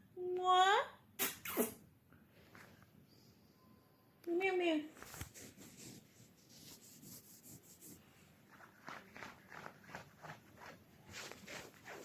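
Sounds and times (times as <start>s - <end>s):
faint rustling: 4.9s - 12.0s.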